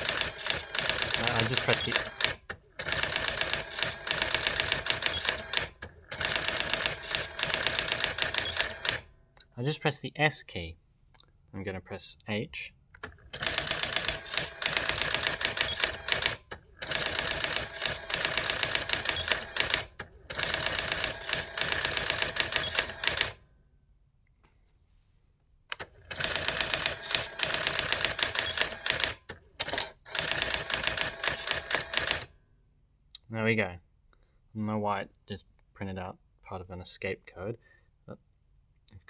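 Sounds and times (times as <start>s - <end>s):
daisy-wheel typewriter printing: 0.0s - 9.1s, 13.0s - 23.4s, 25.7s - 32.3s.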